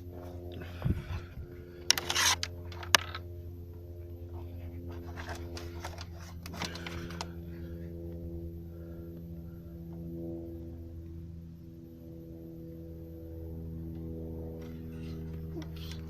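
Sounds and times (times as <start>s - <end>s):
low hum: 0.0s - 16.0s
rubbing and scraping handling noise: 0.1s - 3.3s, 4.3s - 7.3s.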